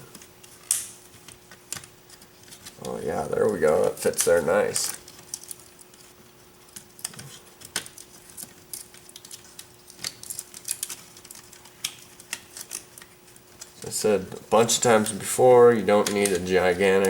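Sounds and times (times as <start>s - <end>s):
faint steady hum: 0.0s - 17.0s
plastic parts clicking and tapping: 0.1s - 5.9s, 16.0s - 17.0s.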